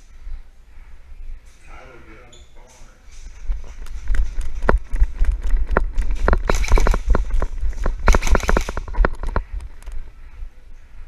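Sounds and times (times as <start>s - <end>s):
running footsteps: 3.0s - 10.1s
microphone handling rumble: 3.2s - 10.2s
gear knocking and rattling: 3.7s - 10.0s.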